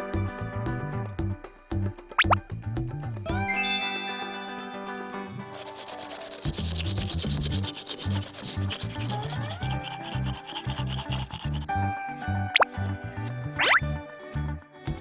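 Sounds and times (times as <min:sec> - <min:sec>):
background music with bass line: 0:00.0 - 0:03.6, 0:05.4 - 0:15.0
rapid rubbing: 0:05.5 - 0:11.7.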